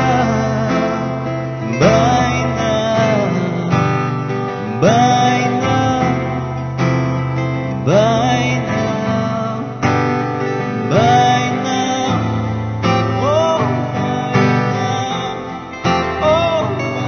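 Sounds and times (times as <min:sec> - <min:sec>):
acoustic guitar music: 0:00.0 - 0:17.0.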